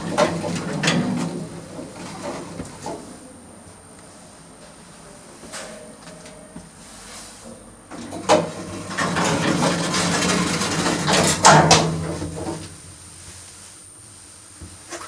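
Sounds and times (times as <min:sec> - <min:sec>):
lift rattling: 0:00.0 - 0:03.0.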